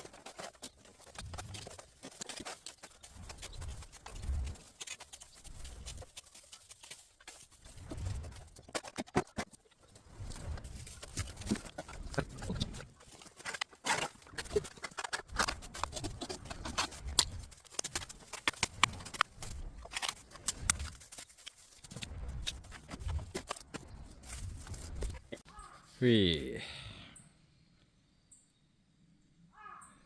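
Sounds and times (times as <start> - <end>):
bamboo leaves rustling: 0.0 - 25.9.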